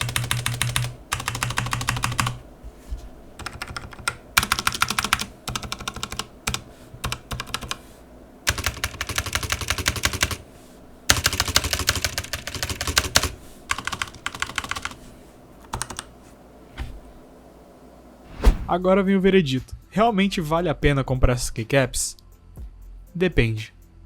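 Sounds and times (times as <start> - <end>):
fast mechanical keyboard typing: 0.0 - 2.4, 3.4 - 7.8, 8.5 - 10.4, 11.1 - 15.0, 15.6 - 16.1.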